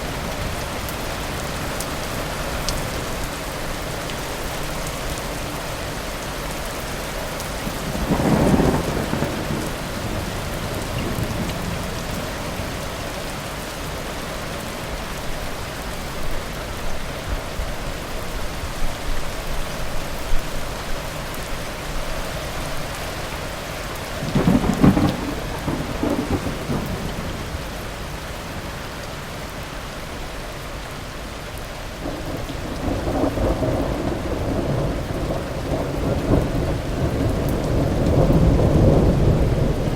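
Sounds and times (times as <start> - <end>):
heavy rain: 0.0 - 39.9
thunder rumbling: 7.6 - 12.9, 24.2 - 27.8, 32.0 - 39.9.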